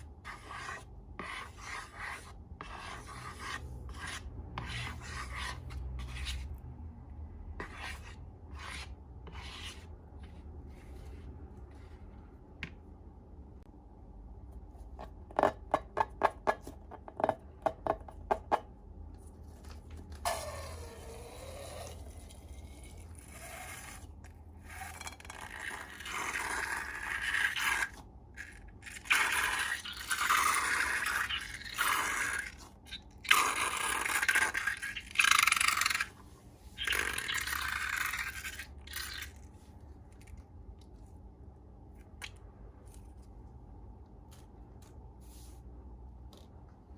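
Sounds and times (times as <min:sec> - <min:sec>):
slime scraping in a container: 0:20.2 - 0:36.2.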